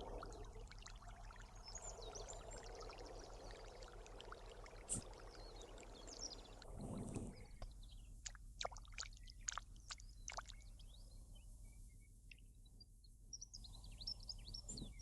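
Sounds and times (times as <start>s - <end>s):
water pouring: 0.0s - 7.6s.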